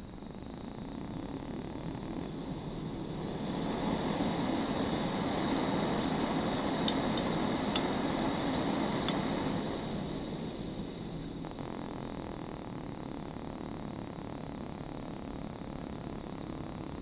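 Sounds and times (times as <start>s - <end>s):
gas burner flame hissing: 0.0s - 14.3s
sharp ticks of escaping gas: 4.0s - 10.3s.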